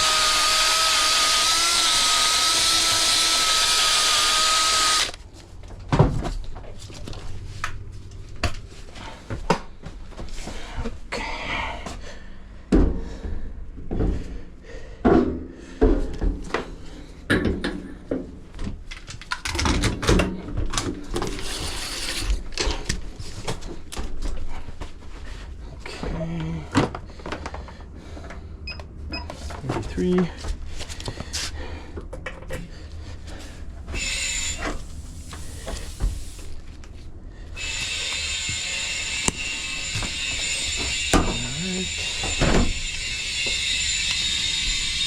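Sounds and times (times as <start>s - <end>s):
power tool whining: 0.0s - 5.2s, 33.8s - 36.5s, 37.6s - 45.0s.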